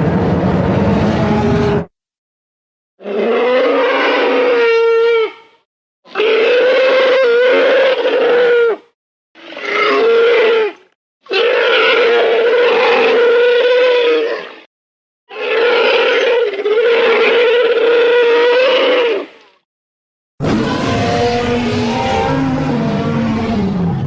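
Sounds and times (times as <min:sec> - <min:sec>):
dinosaur roars: 0:00.0 - 0:01.9, 0:20.4 - 0:24.0.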